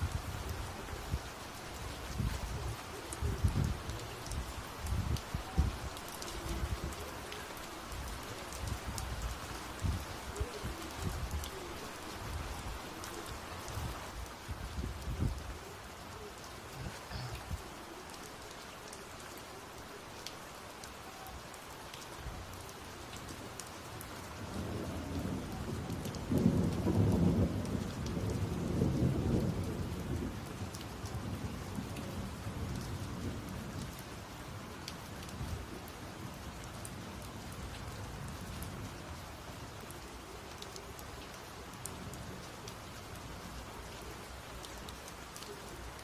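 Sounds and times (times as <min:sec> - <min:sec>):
rain falling: 0:00.0 - 0:46.0
thunder rumbling: 0:24.4 - 0:33.8.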